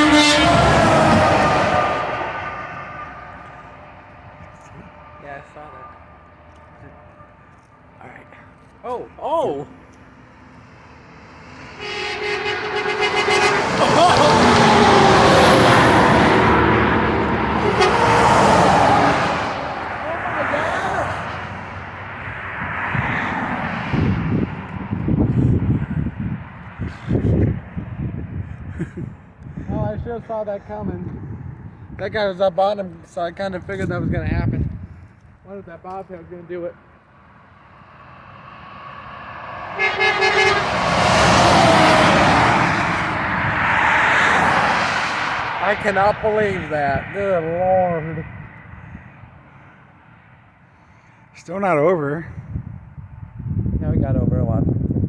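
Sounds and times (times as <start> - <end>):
truck air horn toots: 0.0 - 7.4, 11.6 - 21.1, 39.5 - 43.3
truck engine and road noise: 0.0 - 55.0.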